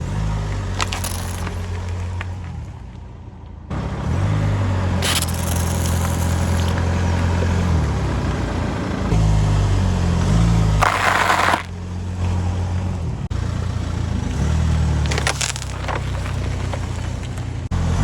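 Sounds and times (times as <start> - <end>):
car engine running slowly: 0.0 - 18.0
object crushed under a tyre: 0.7 - 2.0, 5.0 - 6.8, 10.8 - 11.7, 15.0 - 17.6.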